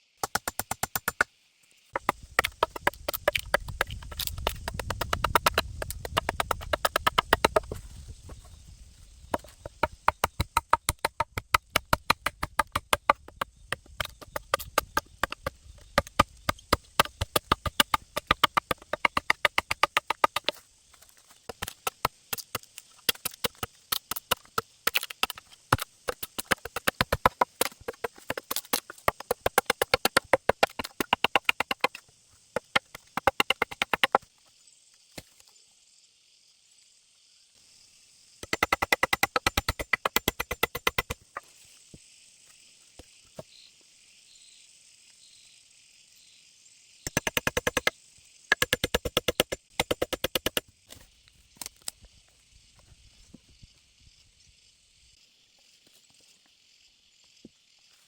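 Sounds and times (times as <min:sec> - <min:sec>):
tool knocking on bamboo: 0:00.2 - 0:01.3, 0:02.0 - 0:08.4, 0:09.3 - 0:20.6, 0:21.5 - 0:32.0, 0:32.6 - 0:34.2, 0:38.4 - 0:41.2, 0:47.1 - 0:47.9, 0:48.5 - 0:50.6.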